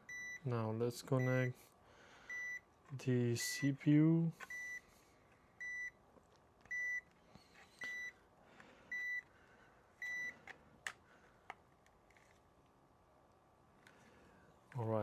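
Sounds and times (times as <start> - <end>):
power supply tester beeping: 0.0 - 0.4, 1.2 - 1.5, 2.3 - 2.6, 4.4 - 4.8, 5.6 - 6.0, 6.7 - 7.1, 7.8 - 8.2, 8.9 - 9.3, 10.0 - 10.5.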